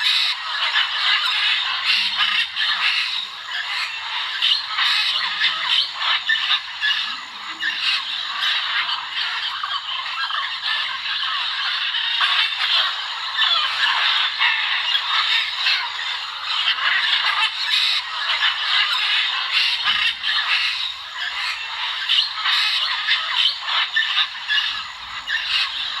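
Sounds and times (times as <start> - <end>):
macaws calling harshly: 0.0 - 26.0.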